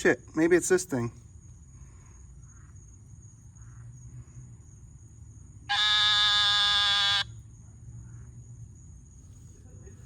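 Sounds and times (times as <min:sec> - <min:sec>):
high insect whine: 0:01.2 - 0:10.0
loud nasal buzz: 0:05.7 - 0:07.3.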